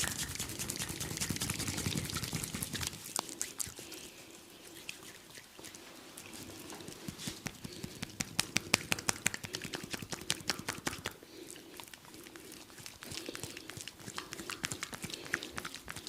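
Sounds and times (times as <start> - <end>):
hands slapping oiled skin: 0.0 - 4.0, 6.9 - 11.2, 12.3 - 16.0.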